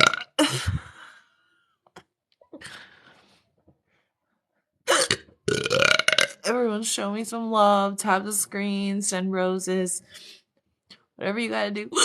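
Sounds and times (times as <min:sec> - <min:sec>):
woman hiccuping: 0:04.9 - 0:05.3.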